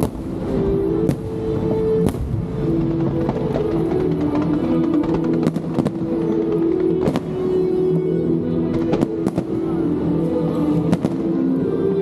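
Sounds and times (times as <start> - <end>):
fireworks bursting: 0.0 - 8.0
music with long held notes: 0.0 - 12.0.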